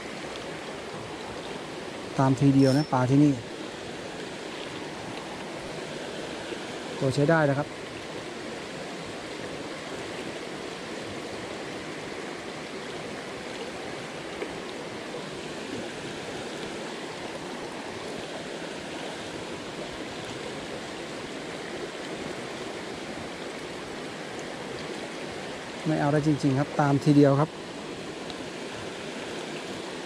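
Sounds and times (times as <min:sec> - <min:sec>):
stream flowing: 0:00.0 - 0:30.0.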